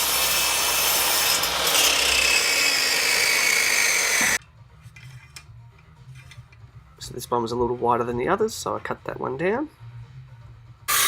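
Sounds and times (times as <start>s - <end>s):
power saw cutting timber: 0.0s - 4.4s.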